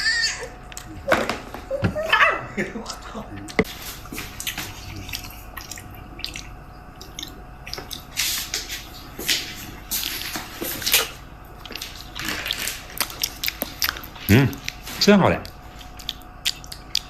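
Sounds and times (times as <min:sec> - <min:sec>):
person chewing food: 0:00.4 - 0:01.7, 0:02.8 - 0:17.0.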